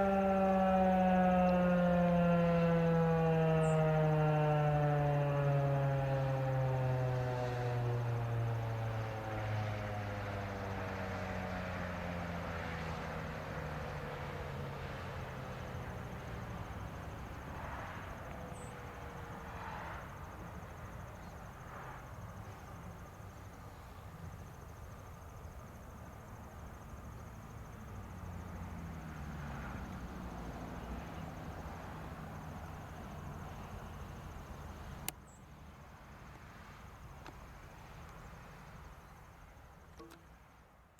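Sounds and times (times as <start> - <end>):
siren winding down: 0.0 - 16.1
sharp click: 39.9 - 40.3.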